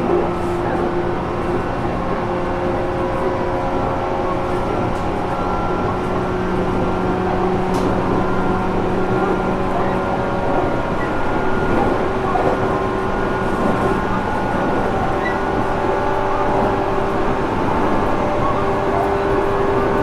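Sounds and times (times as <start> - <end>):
train wheels rumbling on rail: 0.0 - 20.0.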